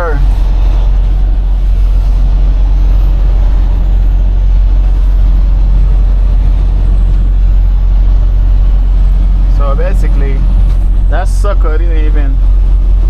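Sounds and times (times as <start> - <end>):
road noise: 0.0 - 13.0
truck diesel engine droning: 0.0 - 13.0.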